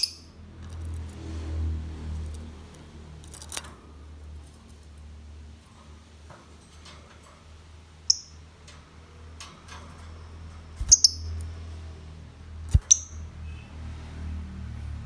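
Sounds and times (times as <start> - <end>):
bird giving shrill chirps: 10.8 - 11.4, 12.7 - 13.2.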